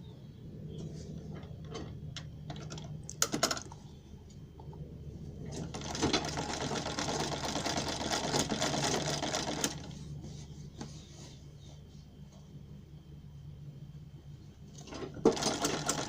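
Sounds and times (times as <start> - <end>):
low motor hum: 0.0 - 8.6
sewing machine needle clatter: 14.8 - 16.0.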